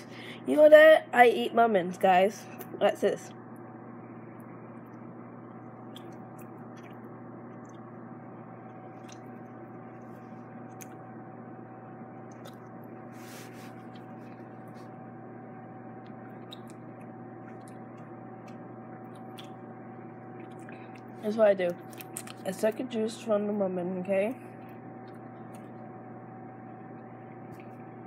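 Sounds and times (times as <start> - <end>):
electrical hum: 0.0 - 28.0
wet mouth clicks: 5.8 - 7.9, 9.0 - 9.4, 12.3 - 12.7, 16.3 - 19.6.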